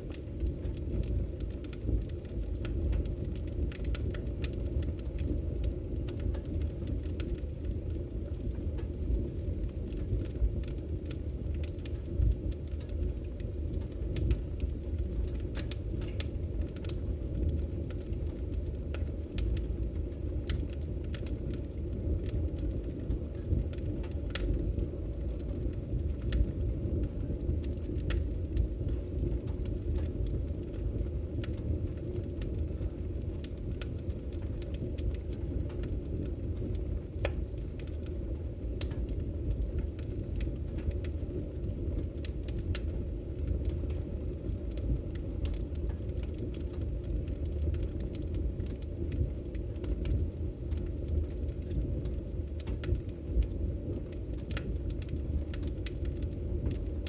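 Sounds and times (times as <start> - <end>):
fire popping and crackling: 0.0 - 57.0
fire roaring in fireplace: 0.0 - 57.0.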